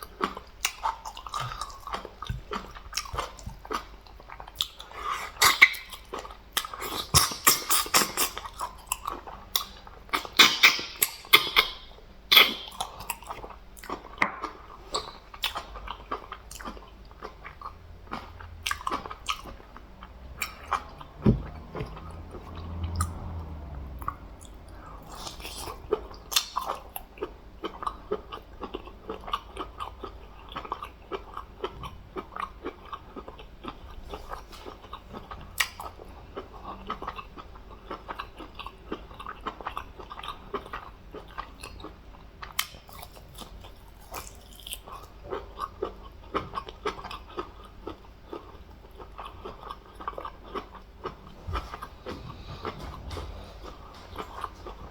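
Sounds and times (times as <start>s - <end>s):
person chewing crunchy food: 0.0s - 54.9s
low thump: 21.2s - 21.6s.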